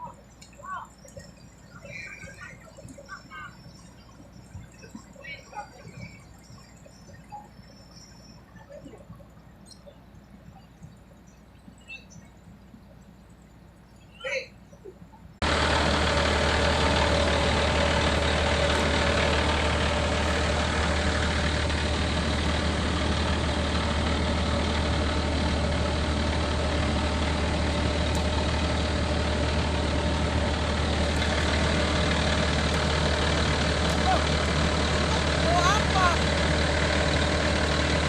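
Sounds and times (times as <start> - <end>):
excavator diesel engine running: 15.4 - 38.0.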